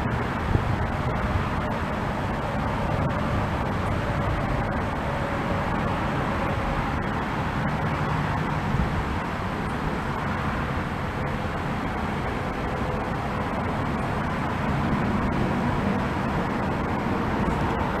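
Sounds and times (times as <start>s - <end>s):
faint steady hums: 0.0s - 18.0s
steady low rumble: 0.0s - 18.0s.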